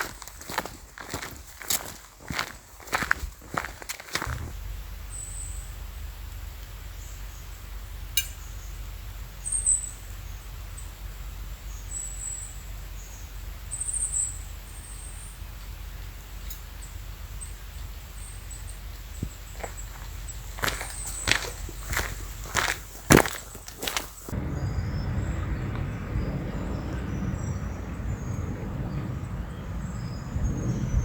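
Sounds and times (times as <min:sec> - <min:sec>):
steady low rumble: 0:02.3 - 0:31.0
sharp click: 0:08.2 - 0:08.4.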